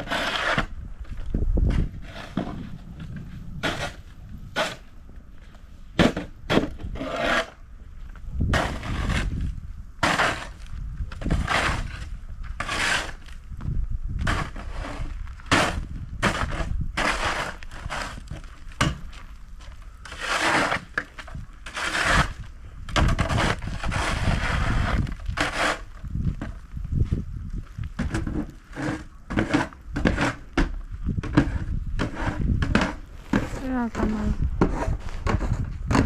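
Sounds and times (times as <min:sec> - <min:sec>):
snow shovel scraping snow: 0:00.0 - 0:00.8, 0:01.7 - 0:02.8, 0:03.6 - 0:04.8, 0:06.8 - 0:07.6, 0:08.6 - 0:10.6, 0:11.2 - 0:13.3, 0:14.3 - 0:18.4, 0:20.1 - 0:21.0, 0:21.6 - 0:25.9, 0:28.1 - 0:30.4, 0:31.2 - 0:35.8.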